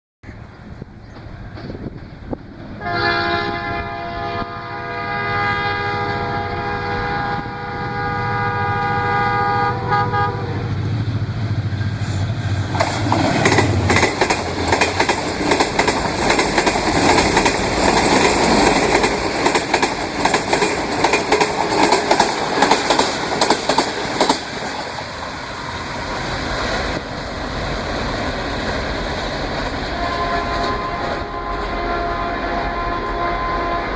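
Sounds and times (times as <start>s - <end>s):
locomotive multi-tone horn: 2.8s - 10.9s, 29.8s - 33.9s
locomotive engine drone: 3.5s - 33.9s
wheels clattering over rail joints: 11.8s - 25.1s.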